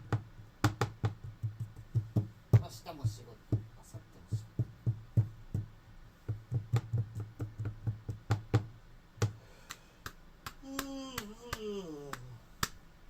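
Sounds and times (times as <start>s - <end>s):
hand percussion knocks and taps: 0.0s - 9.4s.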